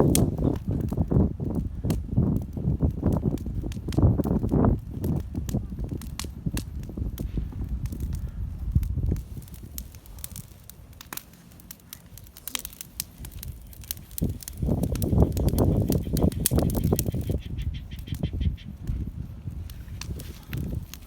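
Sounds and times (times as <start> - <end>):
bonfire crackling and popping: 0.0 - 21.0.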